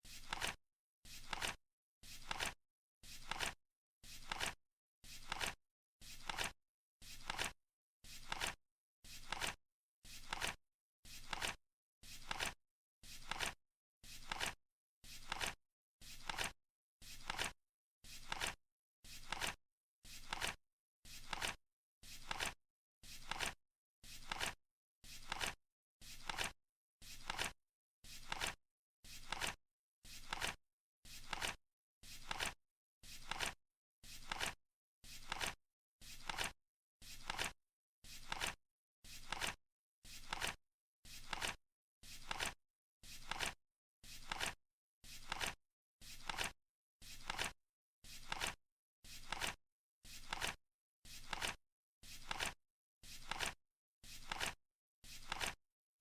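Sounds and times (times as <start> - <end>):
flip clock cards flapping: 0.2 - 0.6, 1.2 - 1.6, 2.2 - 2.6, 3.2 - 3.6, 4.2 - 4.6, 5.2 - 5.6, 6.2 - 6.5, 7.2 - 7.6, 8.2 - 8.6, 9.2 - 9.6, 10.2 - 10.6, 11.2 - 11.6, 15.2 - 15.6, 16.2 - 16.5, 17.2 - 17.5, 19.2 - 19.6, 20.2 - 20.6, 21.2 - 21.6, 22.2 - 22.6, 24.2 - 24.6, 25.2 - 25.6, 26.2 - 26.5, 27.2 - 27.5, 28.2 - 28.6, 29.2 - 29.6, 30.2 - 30.6, 31.2 - 31.6, 32.2 - 32.6, 33.2 - 33.6, 34.2 - 34.6, 35.2 - 35.6, 36.2 - 36.5, 37.2 - 37.5, 38.2 - 38.6, 39.2 - 39.6, 40.2 - 40.6, 41.2 - 41.6, 42.2 - 42.6, 43.2 - 43.6, 44.2 - 44.6, 45.2 - 45.6, 46.2 - 46.5, 47.2 - 47.5, 48.2 - 48.6, 49.2 - 49.6, 50.2 - 50.6, 51.2 - 51.6, 52.2 - 52.6, 54.2 - 54.6, 55.2 - 55.6.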